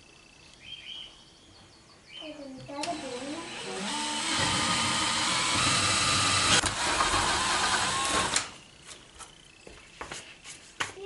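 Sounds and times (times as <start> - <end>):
power drill motor running: 2.8 - 8.6.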